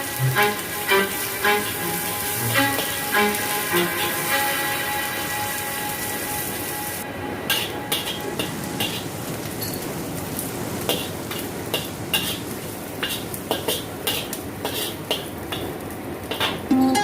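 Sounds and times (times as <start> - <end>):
prawns sizzling in a pan: 0.0 - 16.7
spatula scraping a pan: 12.2 - 12.4, 13.0 - 15.3.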